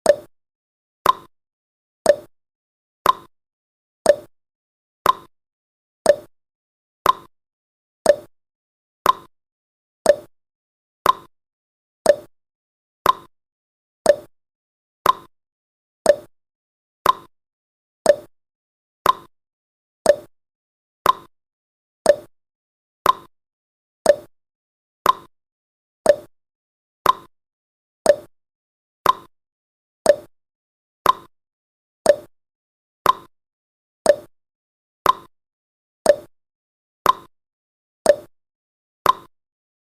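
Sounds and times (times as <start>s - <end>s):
timer clicks: 0.0s - 0.3s, 1.0s - 1.3s, 2.0s - 2.3s, 3.0s - 3.3s, 4.0s - 4.3s, 5.0s - 5.3s, 6.0s - 6.3s, 7.0s - 7.3s, 8.0s - 8.3s, 9.0s - 9.3s, 10.0s - 10.3s, 11.0s - 11.3s, 12.0s - 12.3s, 13.0s - 13.3s, 14.0s - 14.3s, 15.0s - 15.3s, 16.0s - 16.3s, 17.0s - 17.3s, 18.0s - 18.3s, 19.0s - 19.3s, 20.0s - 20.3s, 21.0s - 21.3s, 22.0s - 22.3s, 23.0s - 23.3s, 24.0s - 24.3s, 25.0s - 25.3s, 26.0s - 26.3s, 27.0s - 27.3s, 28.0s - 28.3s, 29.0s - 29.3s, 30.0s - 30.3s, 31.0s - 31.3s, 32.0s - 32.3s, 33.0s - 33.3s, 34.0s - 34.3s, 35.1s - 35.3s, 36.0s - 36.3s, 37.1s - 37.3s, 38.0s - 38.3s, 39.0s - 39.3s.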